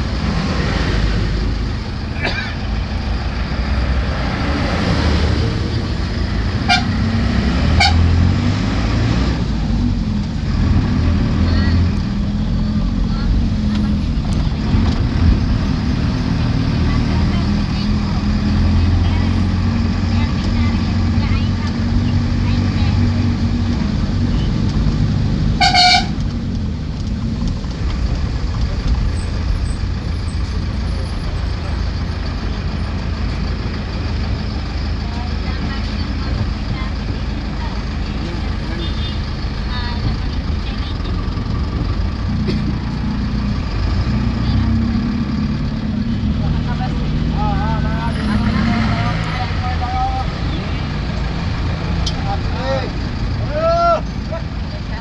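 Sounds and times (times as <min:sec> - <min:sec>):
road rumble: 0:00.0 - 0:55.0
vehicle engine running: 0:00.0 - 0:55.0
vehicle horn beeps: 0:06.6 - 0:07.1, 0:07.7 - 0:08.1, 0:25.6 - 0:26.2.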